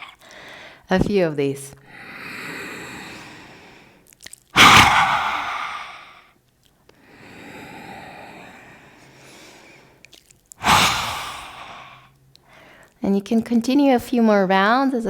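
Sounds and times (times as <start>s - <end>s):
woman inhaling: 0.0s - 0.8s, 1.9s - 4.0s, 4.6s - 6.2s, 7.0s - 10.0s, 10.6s - 12.9s
woman exhaling sharply: 4.6s - 6.2s, 10.6s - 12.1s.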